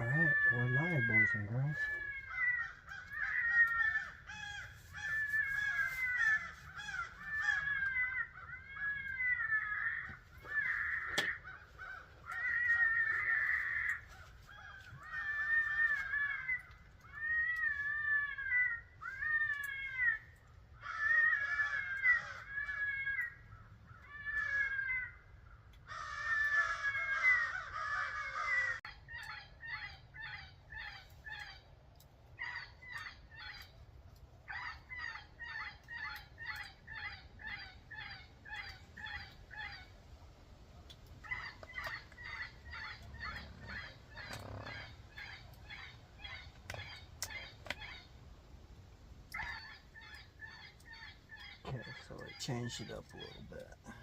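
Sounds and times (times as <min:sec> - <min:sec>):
rabbit distress call squealing: 0:00.0 - 0:23.4, 0:41.2 - 0:48.1.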